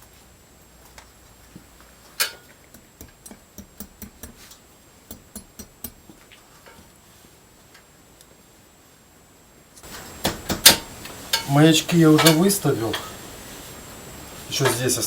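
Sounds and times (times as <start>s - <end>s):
hammer tapping nails: 2.7s - 4.4s, 5.1s - 6.1s.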